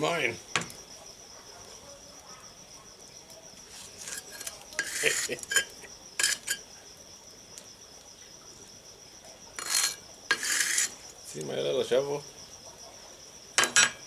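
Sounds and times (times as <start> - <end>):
crickets trilling: 0.0 - 14.0
sharp clicks and scraping: 4.0 - 6.6.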